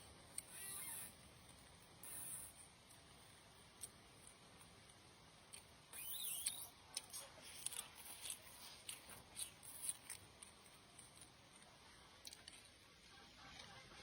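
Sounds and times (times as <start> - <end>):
chewing mouth smacks: 5.5 - 12.8.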